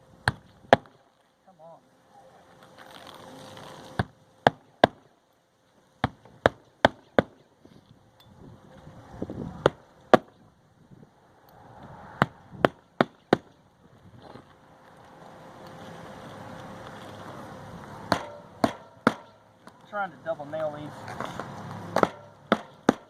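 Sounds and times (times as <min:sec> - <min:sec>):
hatchet hammering nails: 0:18.1 - 0:19.4, 0:22.0 - 0:23.0.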